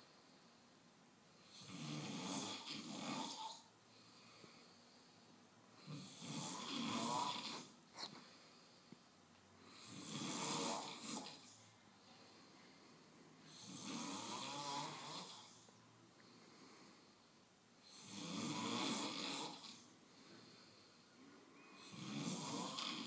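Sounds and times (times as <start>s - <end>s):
slow snoring: 1.4s - 5.0s, 5.8s - 8.1s, 9.6s - 11.6s, 13.4s - 21.0s, 21.6s - 23.0s.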